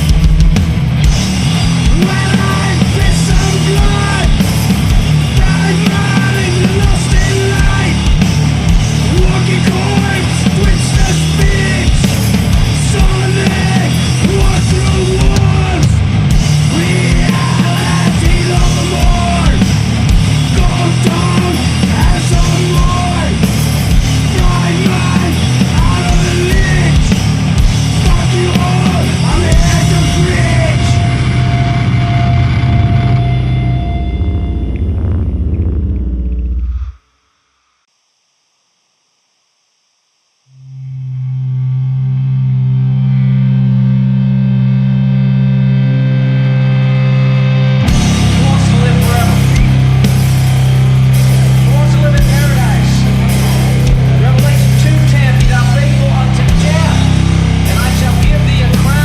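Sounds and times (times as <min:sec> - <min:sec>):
heavy distorted metal music: 0:00.0 - 0:37.0, 0:40.8 - 0:59.0.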